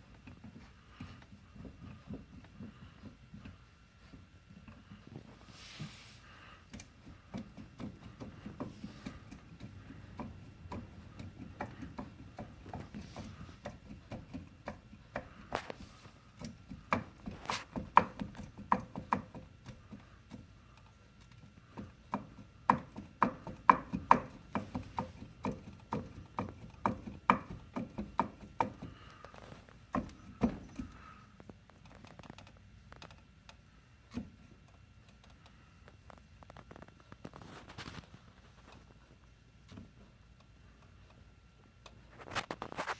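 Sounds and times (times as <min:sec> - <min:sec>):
clunks and clicks from atv wheels: 0:21.2 - 0:33.2.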